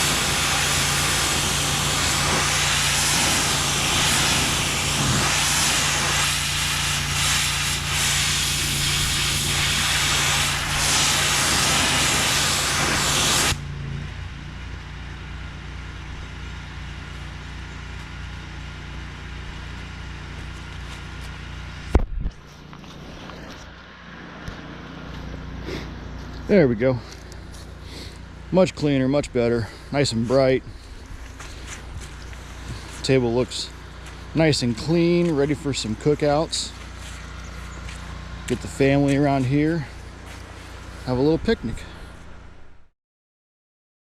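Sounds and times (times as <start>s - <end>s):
pressure washer water spray hiss: 0.0s - 13.6s, 30.0s - 41.9s
engine humming: 0.0s - 42.9s.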